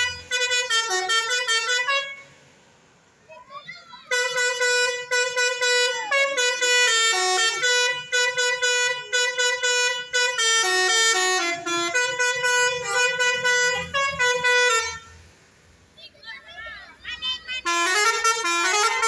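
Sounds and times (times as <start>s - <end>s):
bus horn playing a melody: 0.0s - 2.5s, 4.1s - 15.3s, 17.5s - 19.0s.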